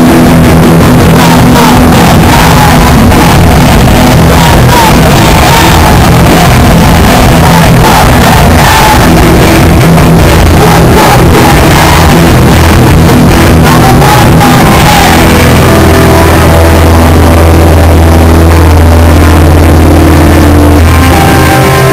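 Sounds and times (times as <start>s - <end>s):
pounding drums: 0.0s - 16.2s
distorted guitars: 0.0s - 21.9s
distorted live punk band: 0.0s - 21.9s
held guitar and bass chord: 0.0s - 21.9s.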